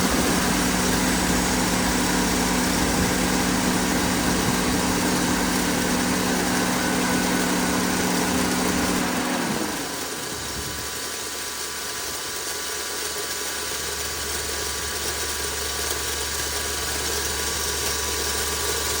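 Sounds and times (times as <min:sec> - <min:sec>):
grinding noise: 0:00.0 - 0:11.1
car engine idling: 0:00.0 - 0:12.0.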